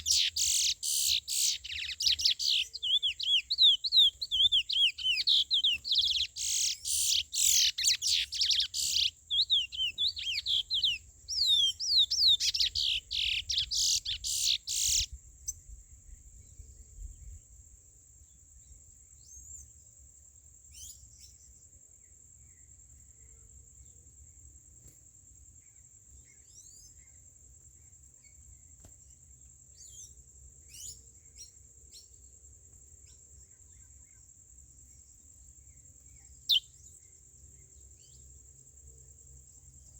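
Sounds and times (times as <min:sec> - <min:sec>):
finch singing whistled phrases: 0:00.0 - 0:15.1, 0:36.4 - 0:36.8
faint bird chirps: 0:00.0 - 0:17.5, 0:18.3 - 0:19.9, 0:20.6 - 0:24.0, 0:24.8 - 0:32.4, 0:33.0 - 0:39.9.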